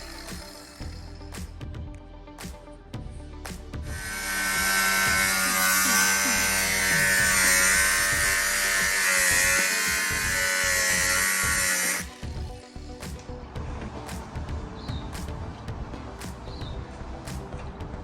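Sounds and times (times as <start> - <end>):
electric power tool whine: 0.0 - 1.3, 3.9 - 13.0.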